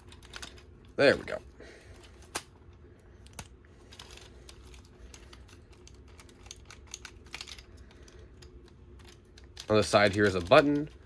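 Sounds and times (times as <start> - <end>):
toy sword plastic clicks and rattles: 0.0 - 0.7, 3.2 - 11.0.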